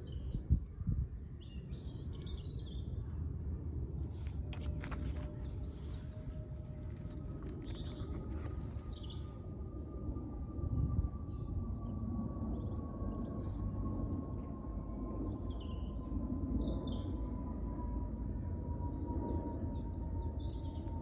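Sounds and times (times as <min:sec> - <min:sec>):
small birds chirping: 0:04.1 - 0:09.6.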